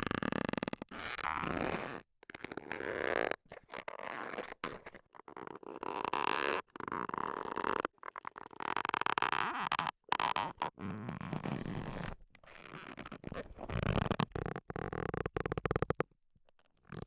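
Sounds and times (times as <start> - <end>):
leather creaking: 5.7 - 17.0.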